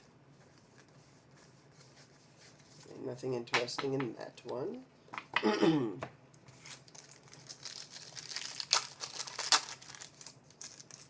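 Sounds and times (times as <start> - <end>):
wrapper crinkling and tearing: 6.6 - 11.0.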